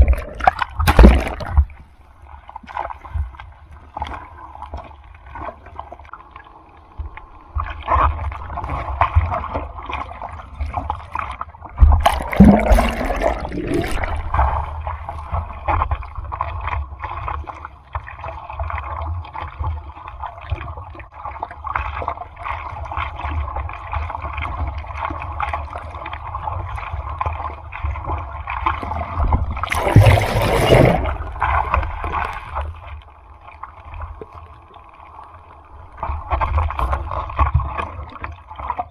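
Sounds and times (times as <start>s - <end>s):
waves breaking and splashing: 12.0s - 15.7s, 29.6s - 32.7s
churning sea rumble: 29.7s - 32.6s.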